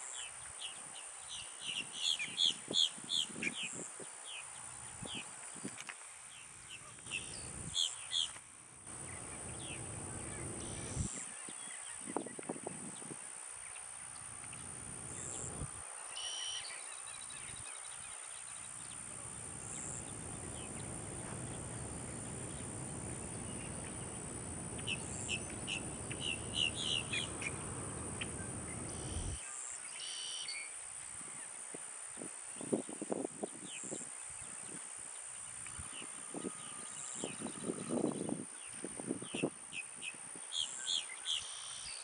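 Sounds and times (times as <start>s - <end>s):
steady low rumble: 19.2s - 29.4s
wetland birds calling: 19.3s - 29.4s.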